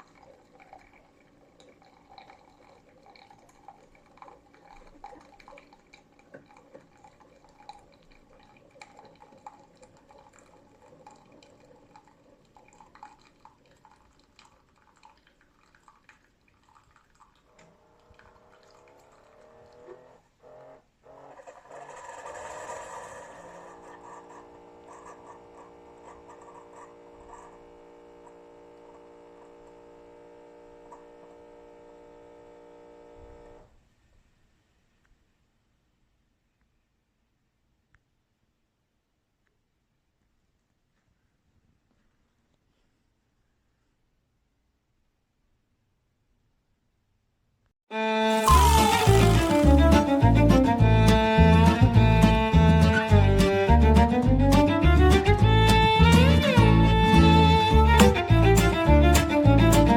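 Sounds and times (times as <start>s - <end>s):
coffee dripping into cup: 0.0s - 19.9s
coffee maker hiss: 48.3s - 50.1s.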